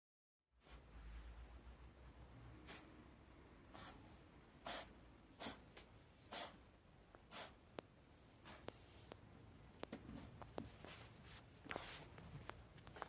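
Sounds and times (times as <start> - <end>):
cat reverse sneezing: 3.7 - 5.7, 6.3 - 6.6, 7.3 - 7.6.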